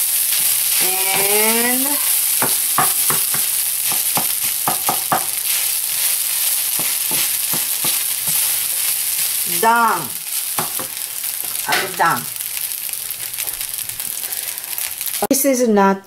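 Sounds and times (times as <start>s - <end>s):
rice sizzling in frying pan: 0.0s - 15.4s.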